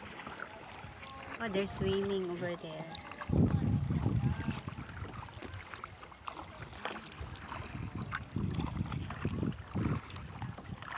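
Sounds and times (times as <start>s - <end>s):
paddle water splashes: 0.0s - 10.9s
wind rumbling on microphone: 3.2s - 6.0s, 7.2s - 10.9s.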